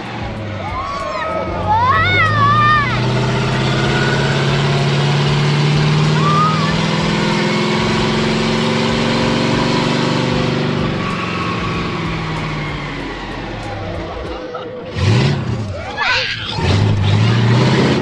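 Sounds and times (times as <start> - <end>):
heavy truck engine running: 0.0 - 18.0.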